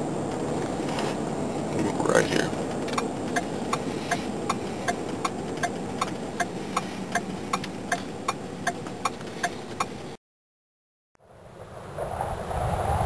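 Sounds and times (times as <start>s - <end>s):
low rumble of vehicle driving: 0.0s - 10.2s
car indicator ticking: 2.8s - 10.1s.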